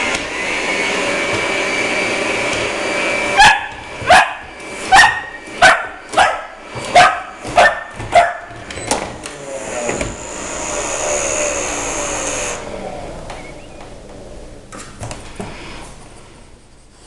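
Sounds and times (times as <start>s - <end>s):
vacuum cleaner motor whining: 0.0s - 16.2s
puppy barking: 3.4s - 8.6s.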